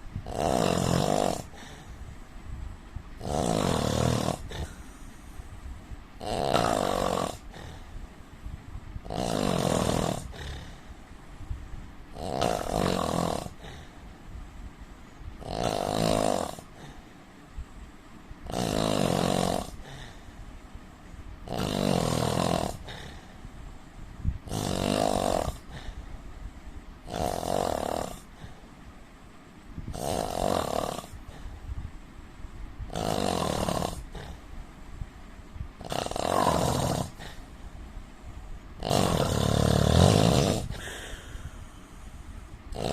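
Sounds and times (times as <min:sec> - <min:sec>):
man snoring: 0:00.2 - 0:01.9, 0:03.2 - 0:05.1, 0:06.2 - 0:08.0, 0:09.0 - 0:10.9, 0:12.1 - 0:14.0, 0:15.4 - 0:17.0, 0:18.4 - 0:20.2, 0:21.4 - 0:23.4, 0:24.4 - 0:26.0, 0:27.0 - 0:28.6, 0:29.9 - 0:31.5, 0:32.9 - 0:34.5, 0:35.8 - 0:37.5, 0:38.8 - 0:41.6.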